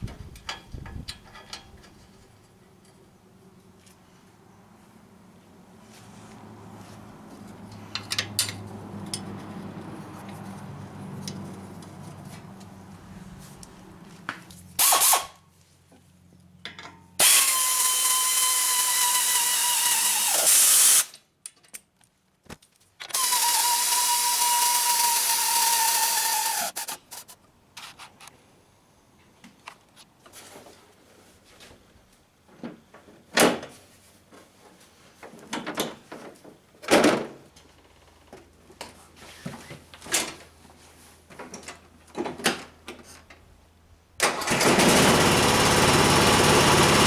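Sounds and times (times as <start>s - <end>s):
power tool whining: 14.8s - 15.3s, 17.2s - 21.1s, 23.1s - 27.3s, 44.4s - 47.0s.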